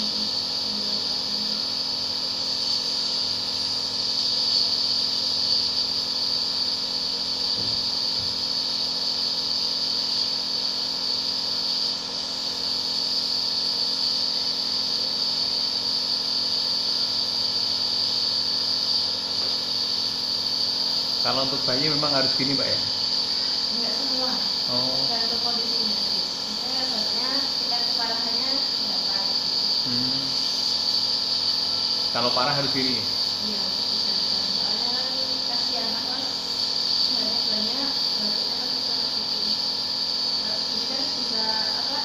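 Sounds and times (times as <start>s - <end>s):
nebulizer humming and hissing: 0.0s - 42.0s.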